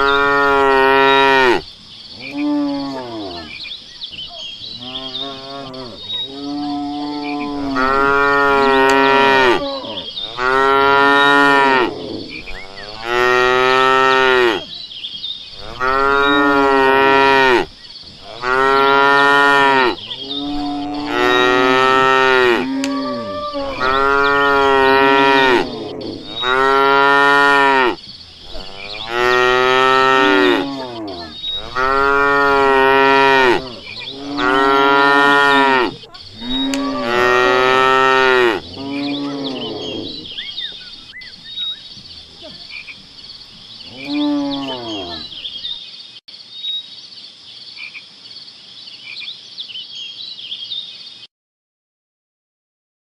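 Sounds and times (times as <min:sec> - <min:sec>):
cattle mooing: 0:00.0 - 0:01.6, 0:04.7 - 0:14.7, 0:15.6 - 0:40.4, 0:43.9 - 0:45.4.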